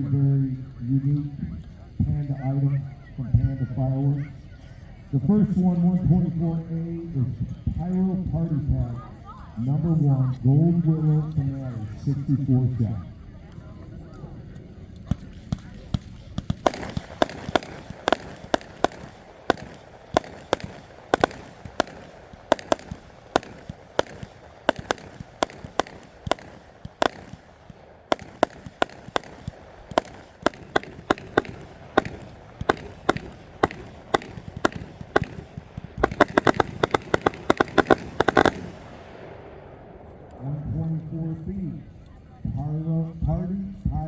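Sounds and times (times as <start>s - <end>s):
fireworks cake firing bangs: 15.0s - 40.1s.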